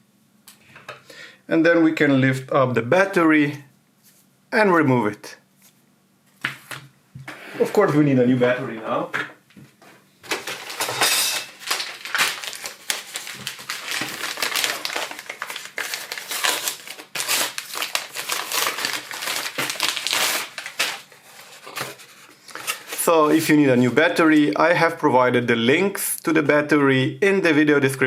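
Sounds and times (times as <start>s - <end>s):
plastic packaging crinkling: 10.2s - 23.4s.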